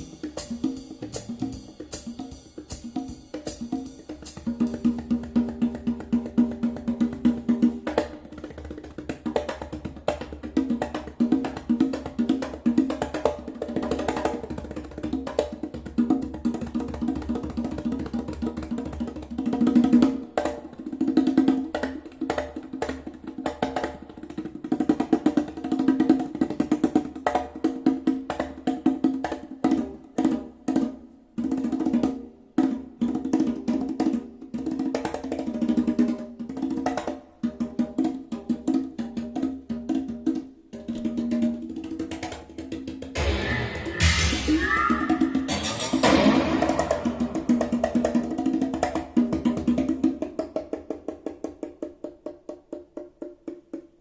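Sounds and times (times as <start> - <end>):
percussion music over loudspeakers: 0.0 - 10.4, 43.1 - 50.0.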